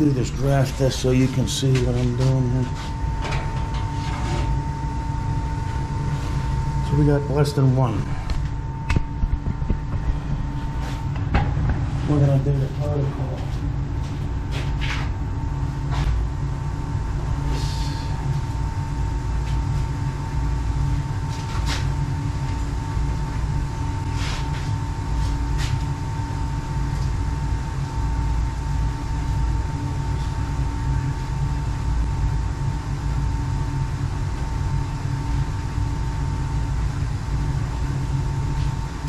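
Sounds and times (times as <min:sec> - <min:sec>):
boiler burner rumble: 0:00.0 - 0:39.0.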